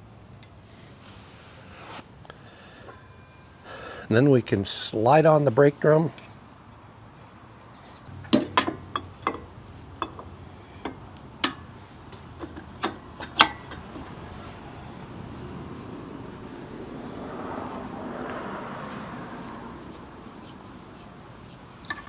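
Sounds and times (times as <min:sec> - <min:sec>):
metal parts clinking and knocking: 0:08.2 - 0:14.2.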